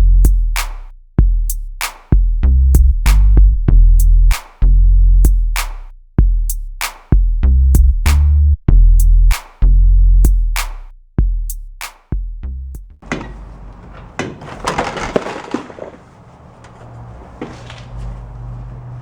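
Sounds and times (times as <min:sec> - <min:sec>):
hip-hop beat with bass drum: 0:00.0 - 0:13.0.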